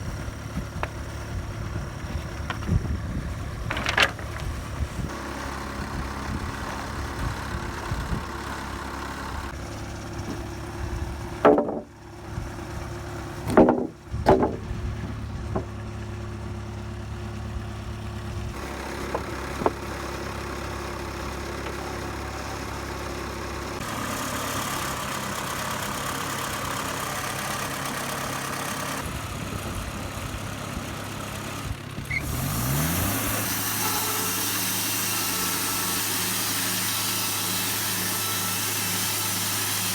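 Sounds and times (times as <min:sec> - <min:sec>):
sawmill engine running: 0:00.0 - 0:39.9
loud knocks: 0:11.4 - 0:11.9, 0:13.5 - 0:15.8.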